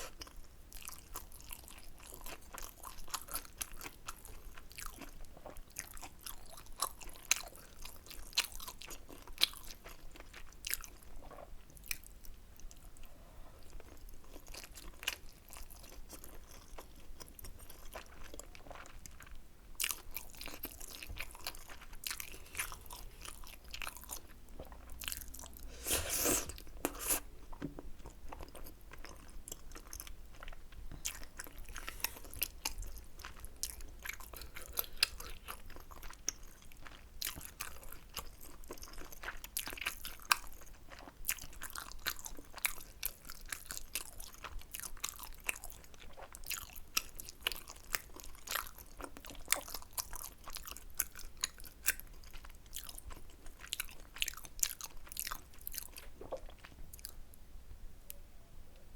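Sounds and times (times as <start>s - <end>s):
wet chewing and biting: 14.4s - 57.2s.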